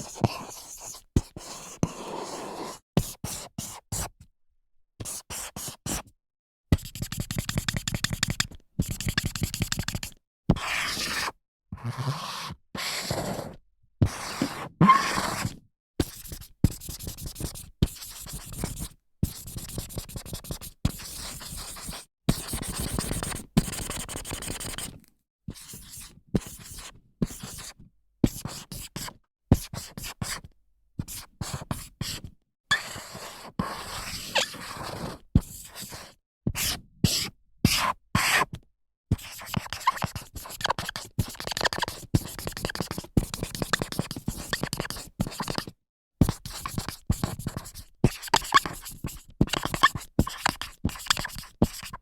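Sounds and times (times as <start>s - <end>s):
marker squeaking on whiteboard: 14.4s - 18.8s, 33.8s - 34.7s, 39.4s - 45.6s, 46.4s - 52.0s.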